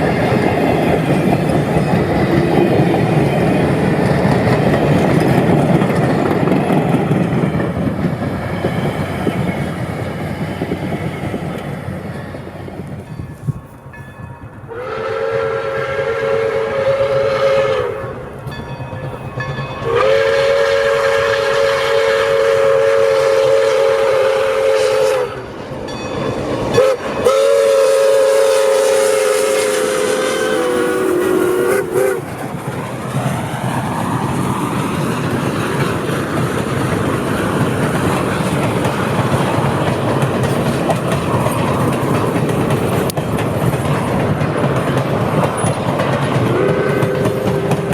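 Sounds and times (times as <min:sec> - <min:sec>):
train rolling past: 0:00.0 - 0:47.9
steam locomotive whistle: 0:14.6 - 0:18.6, 0:19.6 - 0:25.6, 0:26.7 - 0:32.3, 0:46.5 - 0:47.9.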